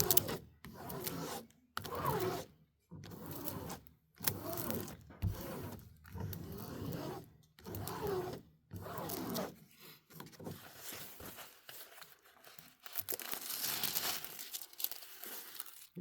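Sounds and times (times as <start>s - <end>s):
plastic wrapping crinkling: 10.8s - 16.0s.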